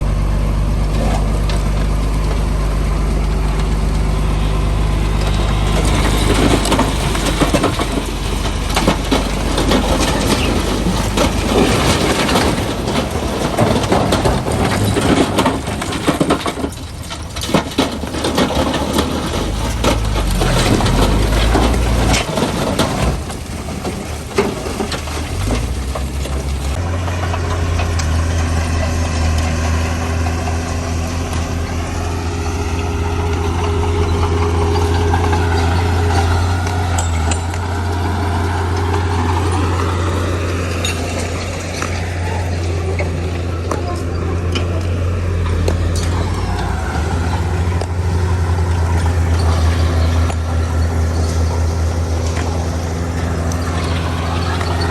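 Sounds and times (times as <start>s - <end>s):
diesel machinery drone: 0.0s - 54.9s
stone clattering and grinding: 32.6s - 54.9s.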